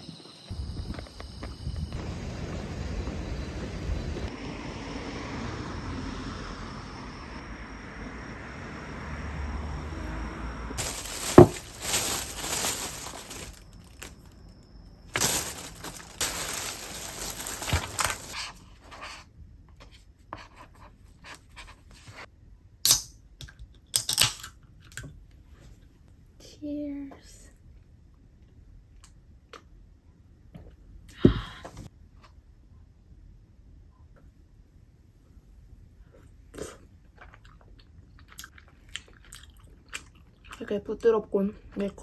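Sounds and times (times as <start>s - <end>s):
plastic packaging crinkling: 10.8s - 14.4s, 15.1s - 18.4s.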